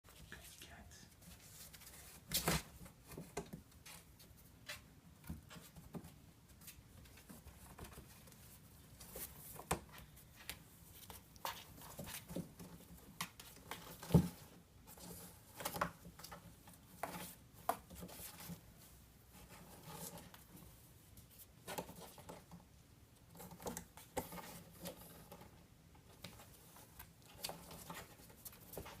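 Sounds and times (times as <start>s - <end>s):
kittens pattering and scuffing: 0.1s - 29.0s.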